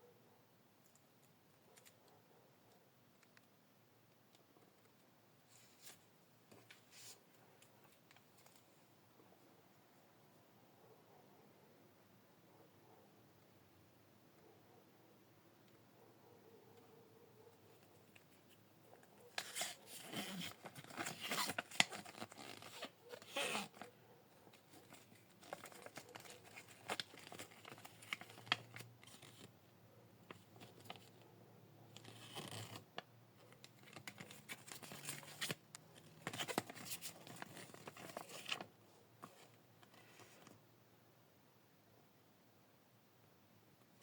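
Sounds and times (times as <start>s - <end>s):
paper crinkling and rustling: 17.8s - 29.6s, 30.2s - 31.3s, 31.9s - 40.6s.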